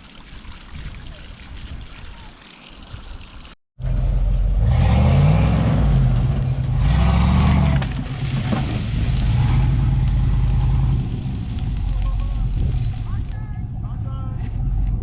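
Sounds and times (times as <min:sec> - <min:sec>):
truck engine revving: 0:03.8 - 0:15.0.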